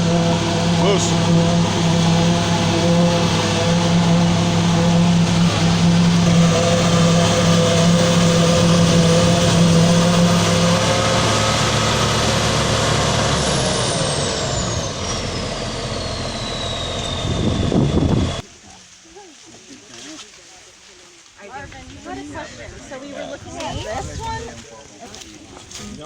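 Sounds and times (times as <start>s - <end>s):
high whine falling in pitch: 0.0s - 18.4s
large engine running: 0.0s - 18.4s.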